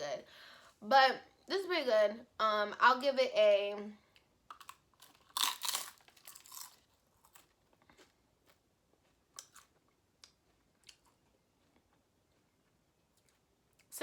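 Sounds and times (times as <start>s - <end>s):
person crunching crispy food: 4.5s - 12.5s.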